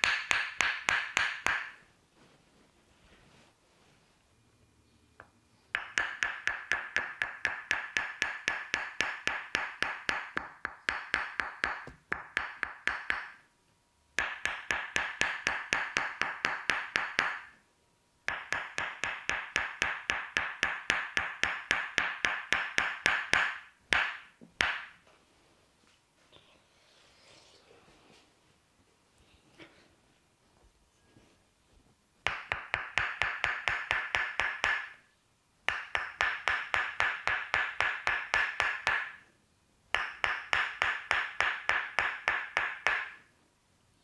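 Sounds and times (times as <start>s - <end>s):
hollow percussive massage tapping: 0.0s - 1.9s, 5.2s - 13.5s, 14.1s - 17.6s, 18.2s - 25.1s, 32.2s - 39.3s, 39.9s - 43.3s.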